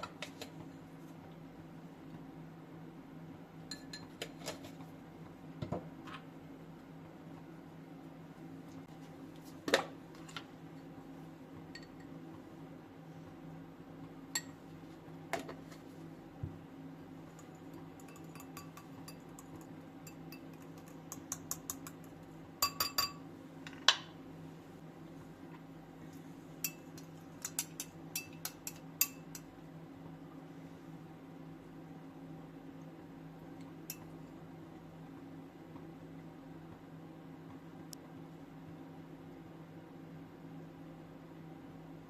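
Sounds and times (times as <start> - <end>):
low steady hum: 0.0 - 42.0
dishes and cutlery clinking: 17.4 - 22.0.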